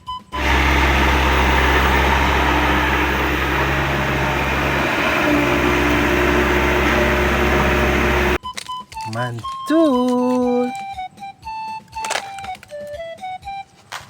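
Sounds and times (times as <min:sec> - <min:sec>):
small machine humming: 0:00.4 - 0:08.4.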